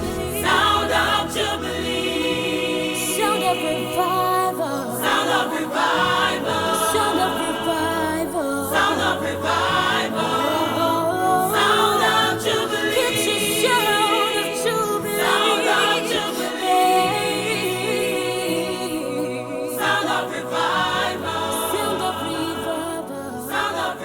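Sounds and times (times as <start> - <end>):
gospel choir singing: 0.0 - 24.0.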